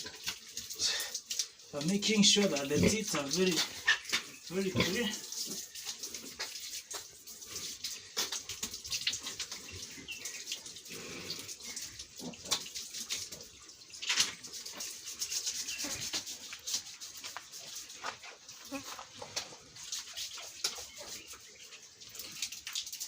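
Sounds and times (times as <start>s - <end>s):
scrubbing a wet surface: 14.0s - 21.8s.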